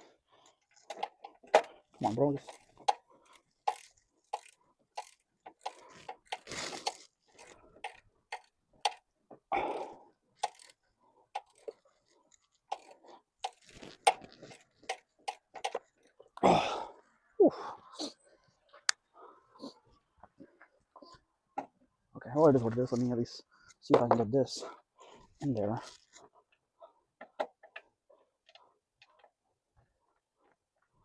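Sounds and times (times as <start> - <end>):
metal hand tools clicking and scraping: 0.8 - 9.1, 10.4 - 16.2.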